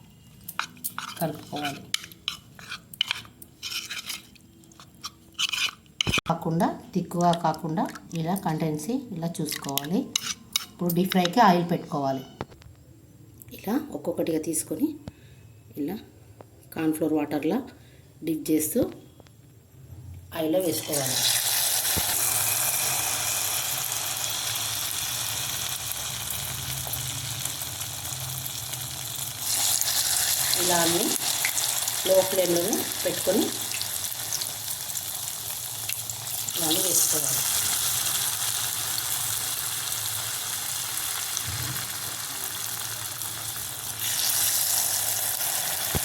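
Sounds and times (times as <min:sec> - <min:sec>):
dough sizzling in hot oil: 0:20.7 - 0:46.0.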